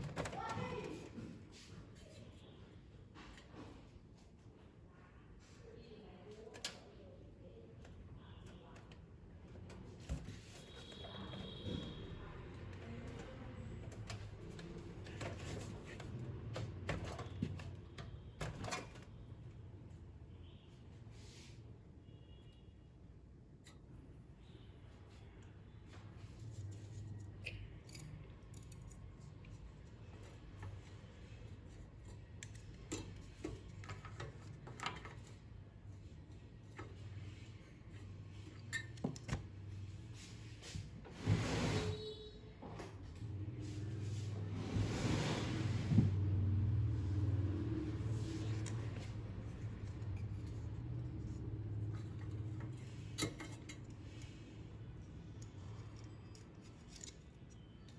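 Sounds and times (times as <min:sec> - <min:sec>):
small parts clicking and tapping: 0:26.7 - 0:35.4, 0:48.4 - 0:57.9.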